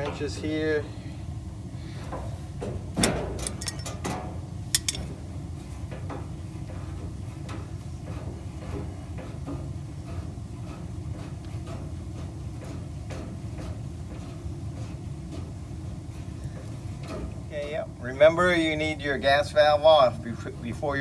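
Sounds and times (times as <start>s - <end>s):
sharp metal clank: 3.4s - 4.2s, 4.8s - 5.1s
wrenches clinking on metal: 3.4s - 4.2s, 4.8s - 5.1s.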